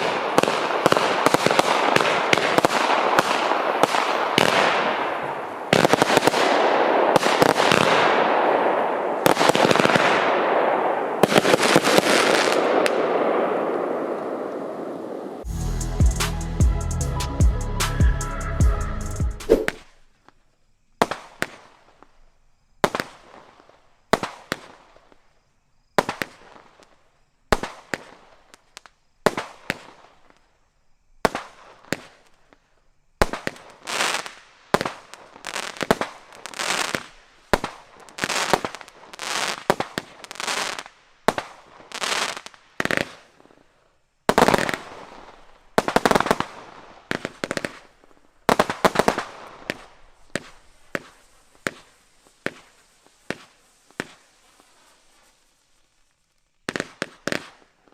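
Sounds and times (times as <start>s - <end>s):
fireworks bangs: 0.0s - 16.8s, 17.4s - 19.9s, 33.2s - 43.6s, 44.3s - 55.4s.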